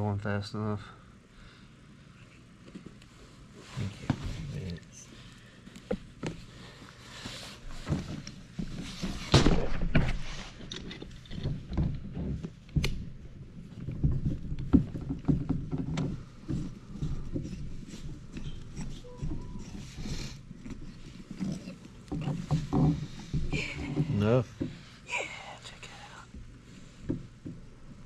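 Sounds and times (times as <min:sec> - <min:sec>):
hands rubbing a rubber boot: 0:13.5 - 0:24.4.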